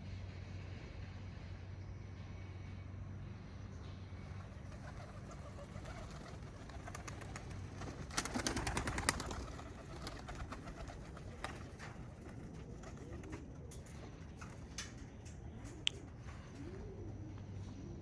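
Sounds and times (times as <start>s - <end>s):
pigeon wings flapping: 4.4s - 15.0s.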